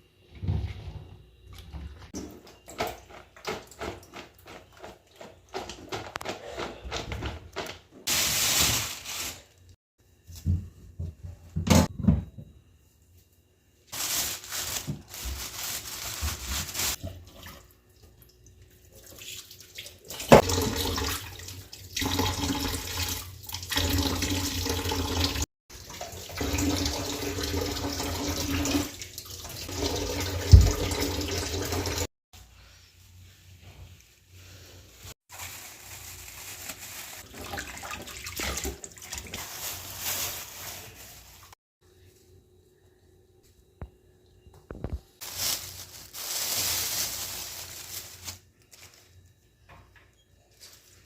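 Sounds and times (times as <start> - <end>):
tap water splashing into sink: 29.4 - 32.0.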